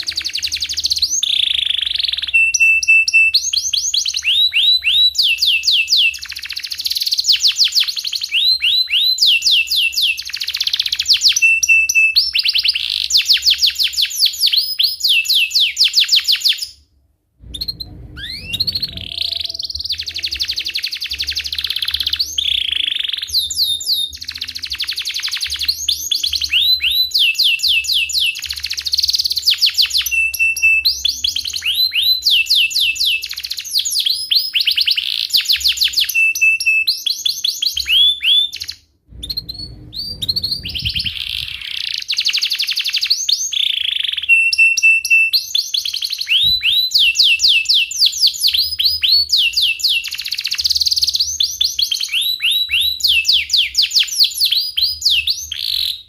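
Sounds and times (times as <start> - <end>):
canary singing chirps and trills: 0.0 - 16.8, 17.5 - 56.0
low rumble: 17.1 - 20.8, 39.1 - 41.7.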